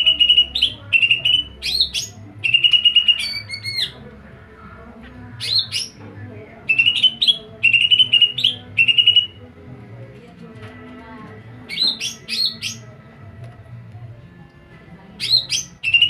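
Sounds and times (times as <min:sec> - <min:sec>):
songbird singing trills: 0:00.0 - 0:04.0, 0:05.4 - 0:06.0, 0:06.6 - 0:09.5, 0:11.6 - 0:13.0, 0:15.2 - 0:16.0.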